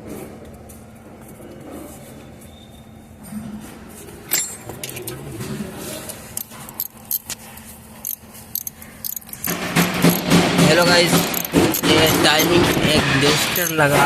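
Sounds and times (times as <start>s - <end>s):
metal tools clinking: 4.3s - 5.2s, 6.0s - 14.0s
person speaking: 10.6s - 14.0s.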